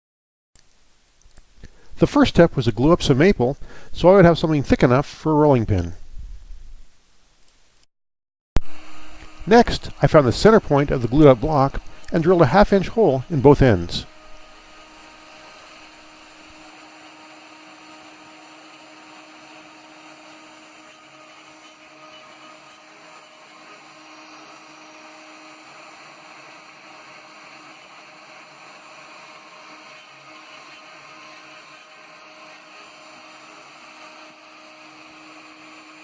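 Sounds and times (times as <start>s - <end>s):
faint steady hiss: 0.6s - 7.9s, 8.6s - 16.7s
low hum: 8.6s - 16.7s.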